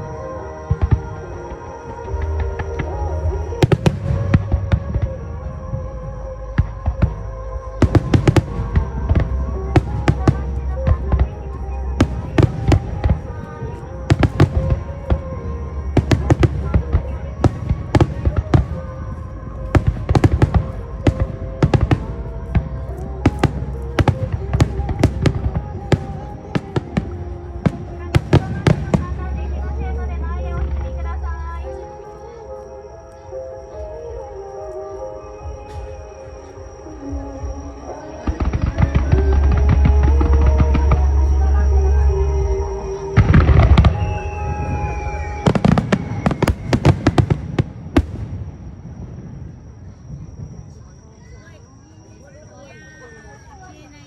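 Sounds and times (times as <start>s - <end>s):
faint steady music tones: 0.0s - 54.0s
fireworks bangs: 7.8s - 29.7s, 35.4s - 41.6s, 42.9s - 51.6s.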